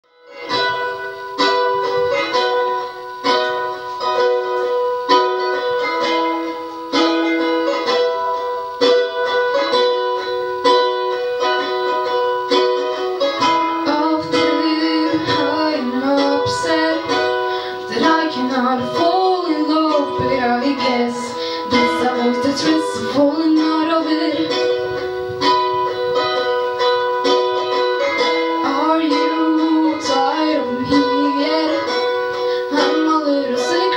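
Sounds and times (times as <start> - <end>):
strummed string instrument chords: 0.0 - 33.9
person singing: 0.2 - 33.9.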